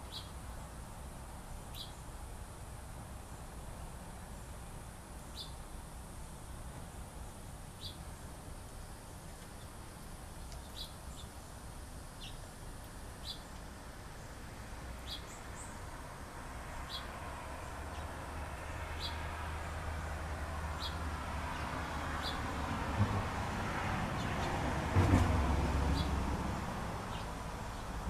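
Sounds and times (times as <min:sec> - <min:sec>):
birds chirping: 0:01.7 - 0:02.0, 0:08.8 - 0:11.6, 0:12.2 - 0:12.5, 0:13.2 - 0:14.4, 0:15.0 - 0:15.8, 0:20.7 - 0:22.5.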